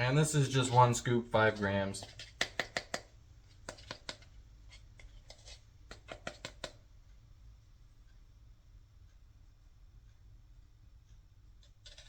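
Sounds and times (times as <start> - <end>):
low room hum: 0.0 - 12.0
plastic scoop clicks and taps: 2.0 - 4.3, 5.3 - 6.8.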